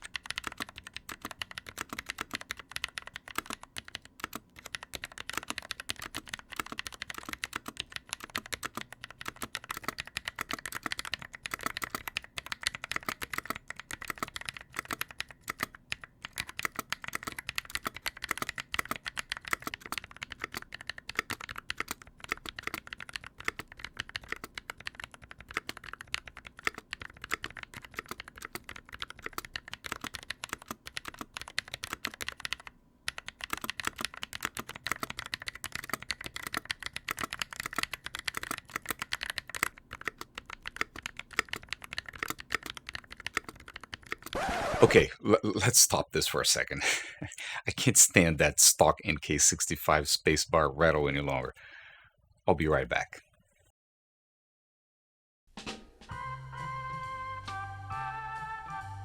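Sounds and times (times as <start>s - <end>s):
fast mechanical keyboard typing: 0.0s - 45.0s.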